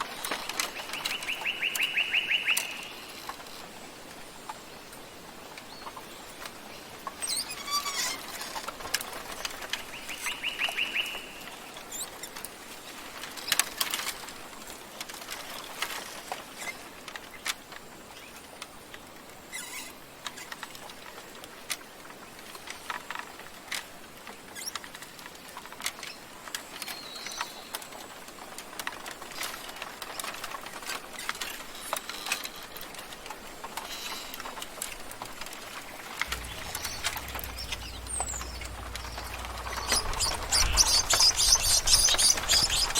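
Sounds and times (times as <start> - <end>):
small birds chirping: 9.8 - 12.3, 36.3 - 42.9
rapid bird trill: 36.3 - 42.9
sea waves: 36.3 - 42.9.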